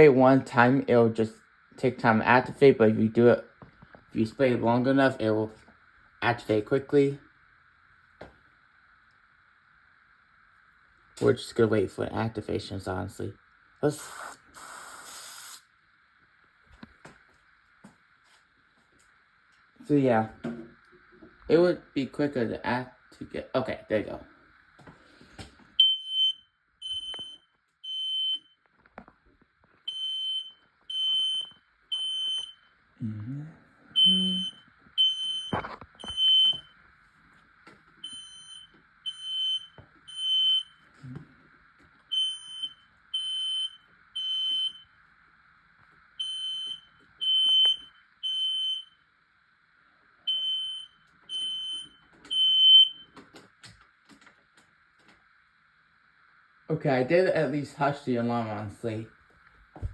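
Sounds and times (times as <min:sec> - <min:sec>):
smoke alarm beeping: 0:13.9 - 0:15.6, 0:25.8 - 0:28.7, 0:29.8 - 0:32.8, 0:34.0 - 0:36.8, 0:38.0 - 0:40.9, 0:42.1 - 0:45.0, 0:46.2 - 0:49.1, 0:50.3 - 0:53.2.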